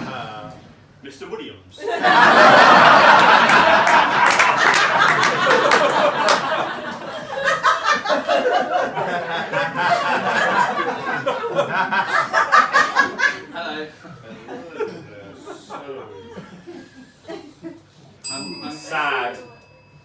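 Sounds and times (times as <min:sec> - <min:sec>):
audience laughing: 0:01.8 - 0:17.9
scattered clapping: 0:03.0 - 0:07.1.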